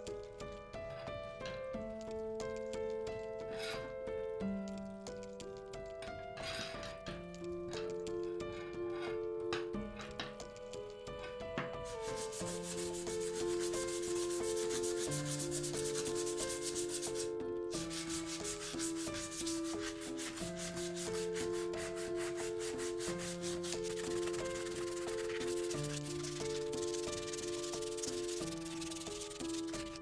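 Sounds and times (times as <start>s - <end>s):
background music held notes: 0.0s - 30.0s
sanding a knife: 11.8s - 30.0s.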